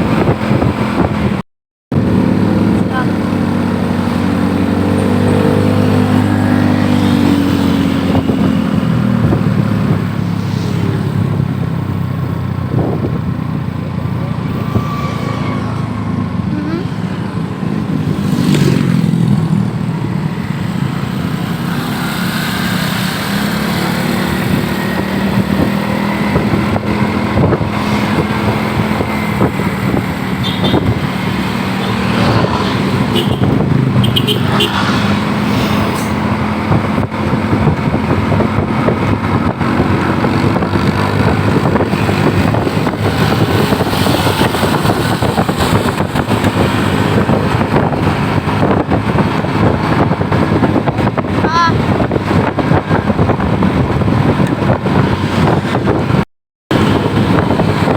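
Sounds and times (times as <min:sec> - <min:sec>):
road traffic: 0:00.0 - 0:57.9.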